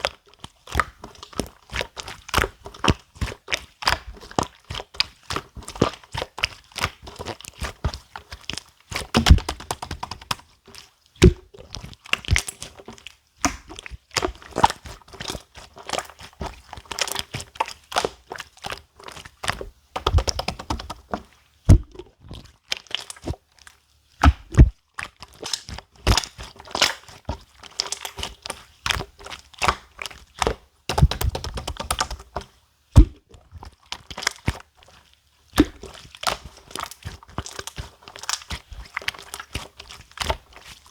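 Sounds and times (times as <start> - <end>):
slime popping and crackling: 8.5 - 10.4, 11.2 - 12.7, 13.4 - 23.4, 24.2 - 32.2, 33.0 - 33.4, 35.6 - 40.6.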